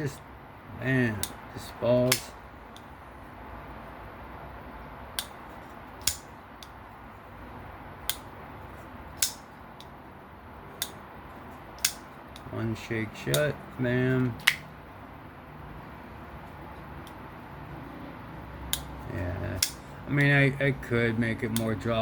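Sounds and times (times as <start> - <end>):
folding knife blade clicking: 6.0 - 6.7, 9.2 - 9.9, 11.8 - 12.5.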